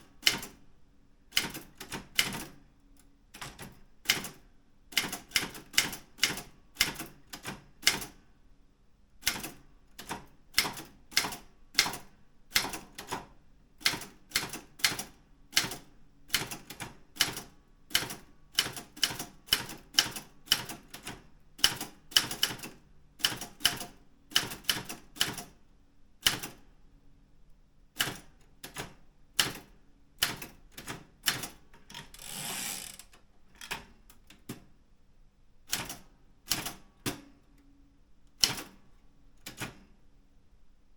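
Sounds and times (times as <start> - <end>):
typewriter carriage sliding: 31.9 - 33.8.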